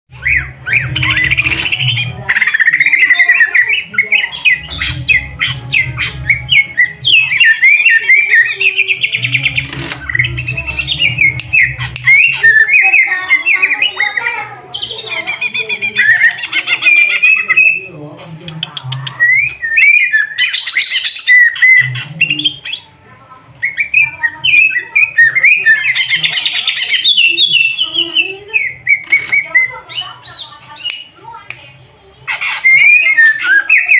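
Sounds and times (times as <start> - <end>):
bird singing chirps and trills: 0.1 - 33.9
sharp clicks: 9.5 - 10.2, 29.0 - 29.5.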